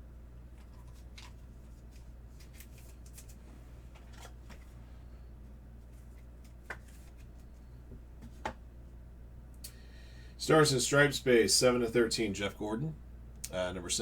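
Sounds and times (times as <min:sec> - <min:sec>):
steady low hum: 0:00.0 - 0:14.0
cards sliding rustles: 0:00.6 - 0:04.8, 0:05.8 - 0:08.5.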